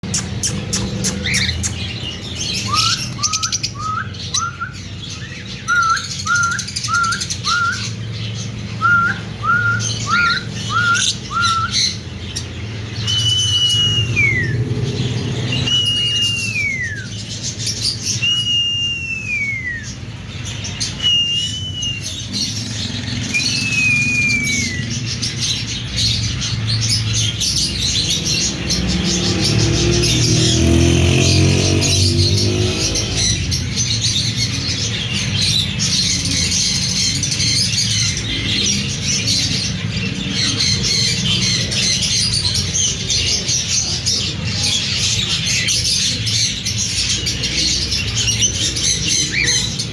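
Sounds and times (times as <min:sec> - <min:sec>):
birds chattering chirps: 0:00.0 - 0:49.9
slow falling bird whistles: 0:13.1 - 0:14.6, 0:15.6 - 0:17.1, 0:21.0 - 0:22.2, 0:23.3 - 0:25.0.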